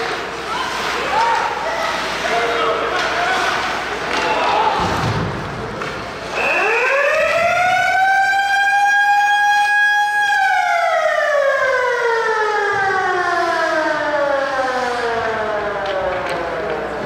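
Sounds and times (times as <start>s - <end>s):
motor-driven siren wailing: 6.3s - 17.0s.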